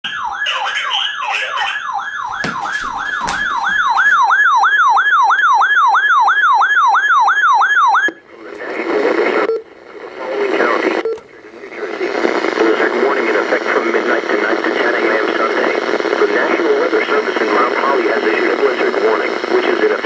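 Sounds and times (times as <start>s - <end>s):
electronic siren cycling rapidly: 0.0s - 8.2s
hissy radio noise: 8.2s - 20.0s.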